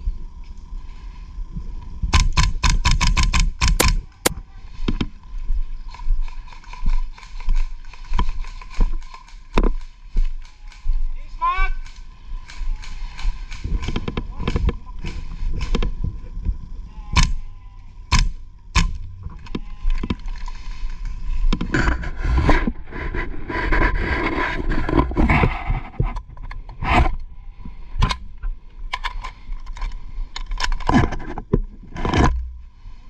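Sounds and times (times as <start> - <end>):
sharp clicks and knocks: 2.1 - 4.1
rustling and scraping of gear: 4.2 - 16.8, 19.0 - 33.0.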